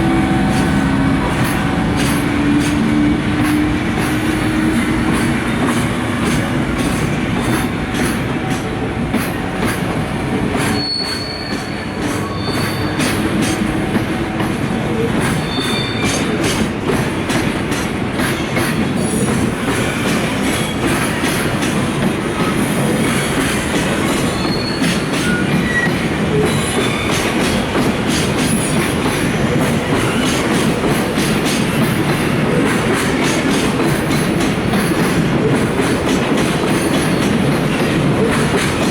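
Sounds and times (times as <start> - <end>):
train wheels clattering over rail joints: 0.0 - 38.9
high wheel squeals: 10.6 - 13.4, 15.3 - 16.4, 24.0 - 27.7.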